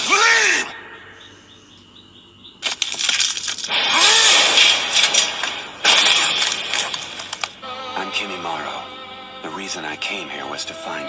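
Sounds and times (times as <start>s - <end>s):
person yelling: 0.0s - 0.8s
crashing and smashing impacts: 2.7s - 7.5s.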